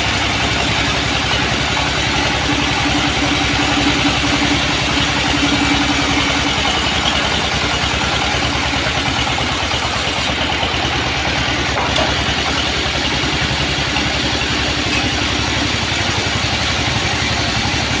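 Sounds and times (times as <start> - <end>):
engine running band saw: 0.0 - 18.0.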